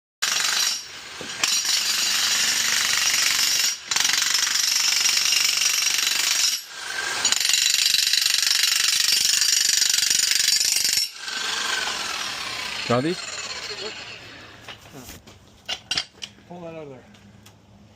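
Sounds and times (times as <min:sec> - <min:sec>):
jackhammer hammering concrete: 0:00.2 - 0:14.2.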